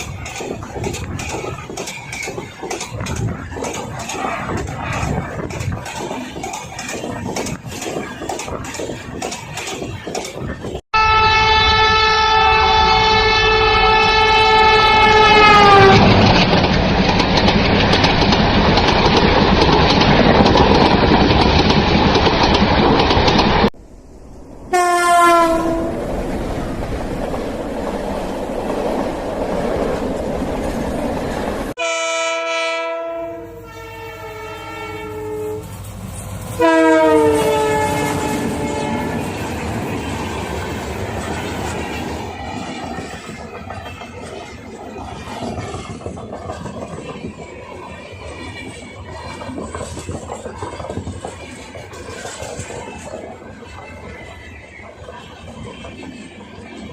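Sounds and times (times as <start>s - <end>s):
passing train clickety-clack: 0.0s - 23.8s, 24.7s - 56.9s
train horn blasts: 10.9s - 16.1s, 24.7s - 26.0s, 31.8s - 35.7s, 36.6s - 39.3s.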